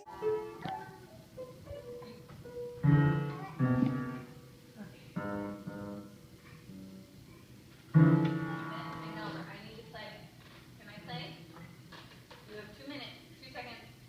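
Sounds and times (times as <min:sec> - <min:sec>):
piano playing slow chords: 0:00.0 - 0:07.3, 0:07.9 - 0:09.4.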